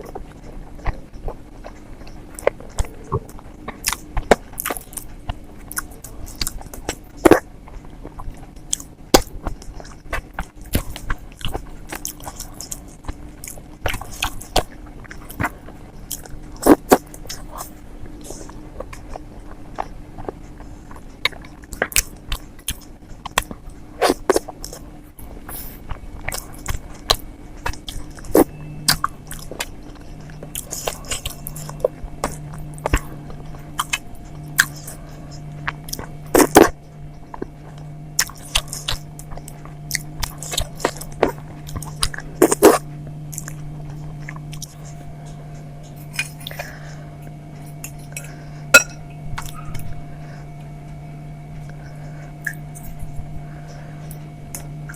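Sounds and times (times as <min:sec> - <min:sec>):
faint steady hum: 0:00.0 - 0:54.9
chewing and wet mouth clicks: 0:05.7 - 0:24.8, 0:25.9 - 0:46.7, 0:49.4 - 0:49.9, 0:52.4 - 0:53.0.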